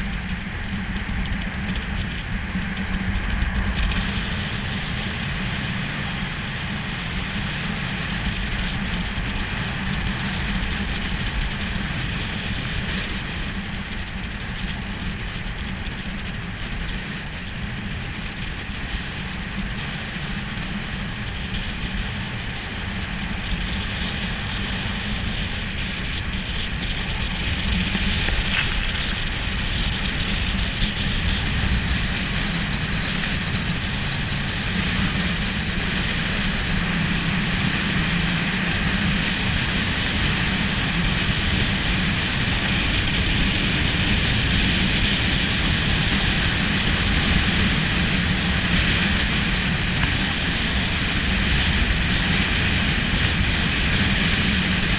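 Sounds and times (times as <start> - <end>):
skateboard wheels rolling on road: 0.0 - 54.9
rushing air: 25.2 - 32.2.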